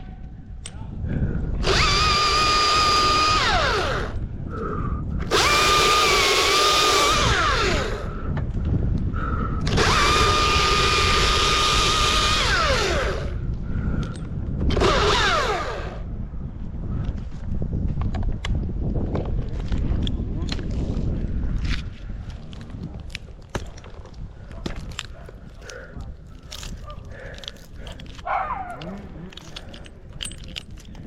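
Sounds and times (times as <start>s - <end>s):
chainsaw cutting at full throttle: 1.6s - 4.2s, 5.2s - 8.1s, 9.7s - 13.4s, 14.7s - 16.0s.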